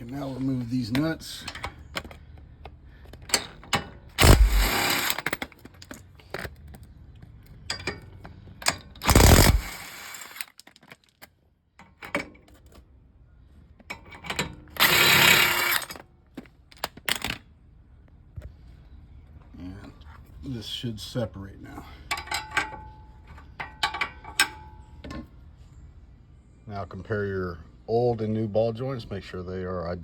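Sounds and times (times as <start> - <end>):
nuts and socket clinking: 3.2 - 6.8, 7.5 - 12.3, 22.1 - 25.0
impact wrench bursts: 4.2 - 5.4, 9.0 - 10.5, 14.7 - 16.0.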